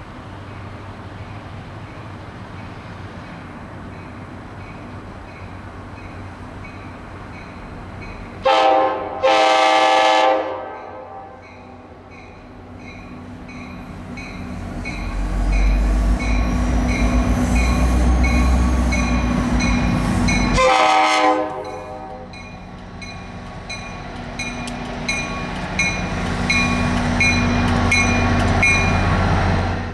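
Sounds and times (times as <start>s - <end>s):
train rumble: 0.0s - 29.9s
locomotive horn blasts: 8.4s - 11.8s, 20.4s - 22.3s
wheels clacking over rail joints: 21.5s - 29.3s.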